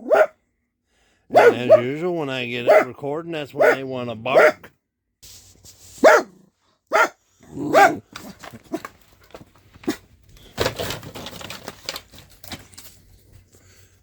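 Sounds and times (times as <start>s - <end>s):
dog barking: 0.0s - 0.4s, 1.3s - 2.0s, 2.6s - 4.7s, 6.0s - 8.1s
rustling noise: 5.2s - 6.2s, 8.0s - 14.0s.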